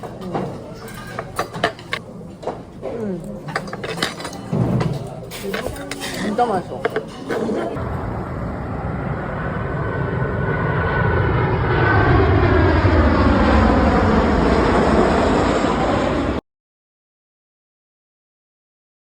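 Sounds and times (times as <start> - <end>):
aircraft engines roaring: 0.0 - 2.8, 3.5 - 16.4
faint engine whine: 7.8 - 16.4.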